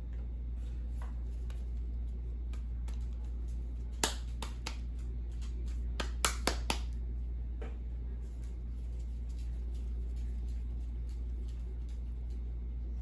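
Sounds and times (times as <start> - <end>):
low hum: 6.9 - 13.0.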